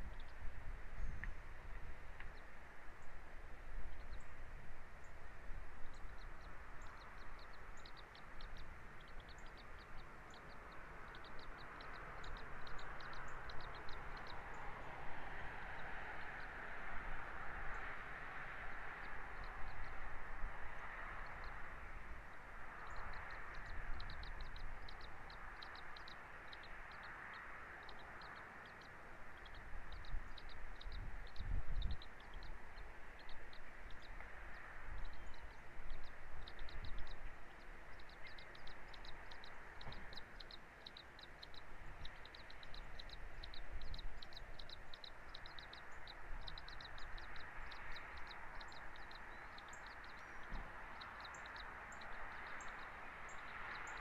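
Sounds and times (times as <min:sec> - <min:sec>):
wind on microphone: 0:29.3 - 0:40.3.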